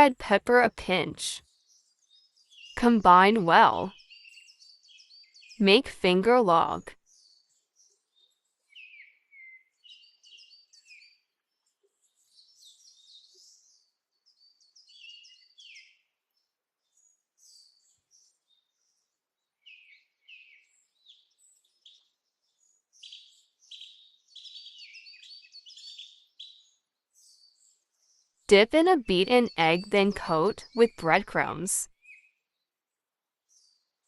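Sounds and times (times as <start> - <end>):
songbirds chirping: 0.0 - 34.0.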